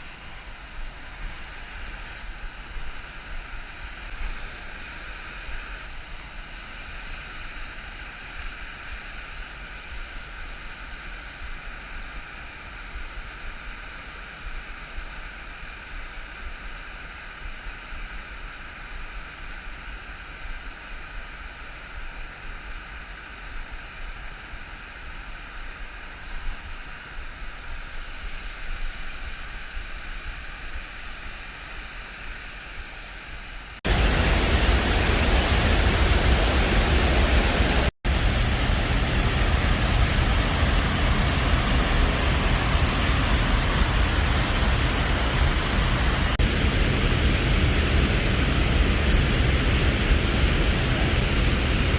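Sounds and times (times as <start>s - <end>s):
waterfall and river rushing: 33.9s - 51.9s.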